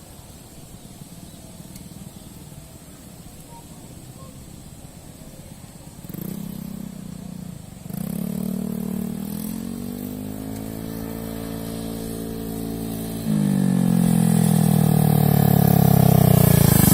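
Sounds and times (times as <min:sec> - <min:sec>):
scooter engine revving: 0:05.6 - 0:16.9.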